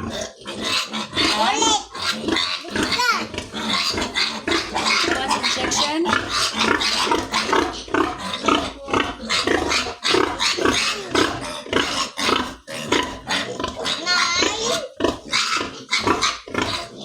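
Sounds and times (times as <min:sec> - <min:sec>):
pigs squealing and grunting: 0:00.0 - 0:17.0.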